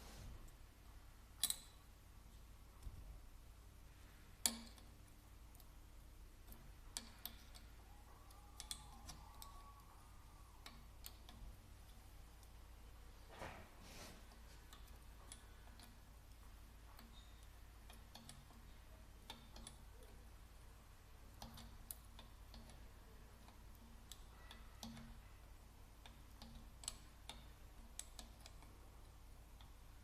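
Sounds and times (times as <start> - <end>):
small metal parts clicking: 1.4 - 1.9, 4.4 - 4.9, 6.4 - 12.6, 14.3 - 20.2, 21.3 - 28.8.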